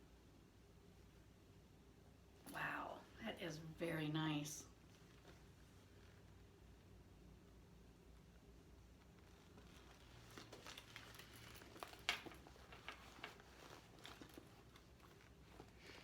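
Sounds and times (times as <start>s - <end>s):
handbag rustling: 9.2s - 16.0s
handbag clicks: 9.8s - 15.7s.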